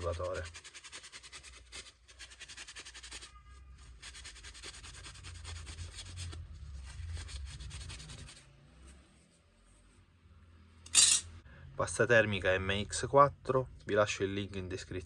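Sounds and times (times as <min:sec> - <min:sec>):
paper towel scrubbing heatsink: 0:00.0 - 0:03.2.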